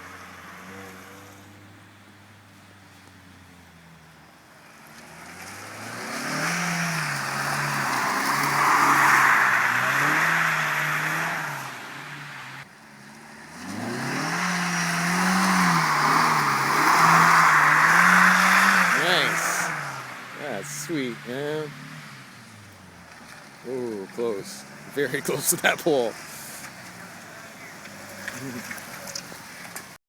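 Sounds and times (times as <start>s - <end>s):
tyres hissing on wet pavement: 4.6s - 30.0s
car engine revving hard: 4.8s - 12.6s, 13.3s - 22.6s.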